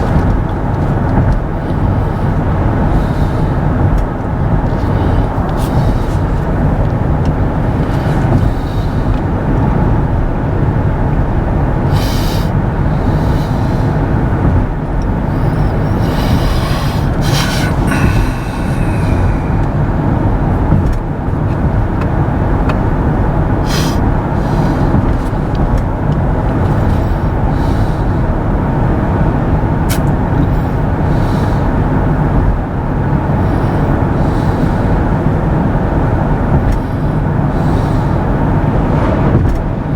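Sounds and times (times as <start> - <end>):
tyre and road noise in car: 0.0 - 39.9
hissing swells: 15.2 - 20.1.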